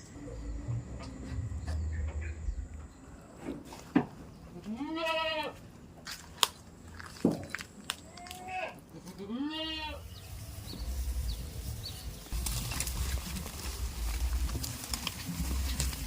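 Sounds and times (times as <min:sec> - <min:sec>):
goat bleating: 0:04.6 - 0:05.6, 0:08.1 - 0:10.1.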